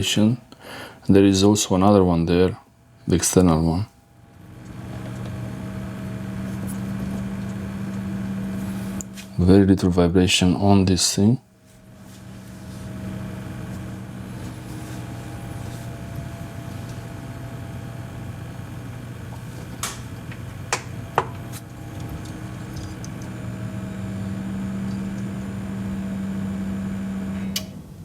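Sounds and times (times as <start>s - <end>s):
hard drive low hum: 0.0s - 28.0s.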